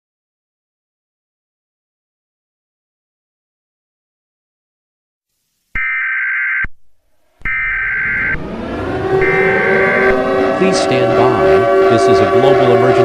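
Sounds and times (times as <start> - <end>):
harsh digital data tones: 5.8 - 6.7, 7.4 - 8.5, 9.1 - 10.2
low shifting background sound: 7.2 - 13.0.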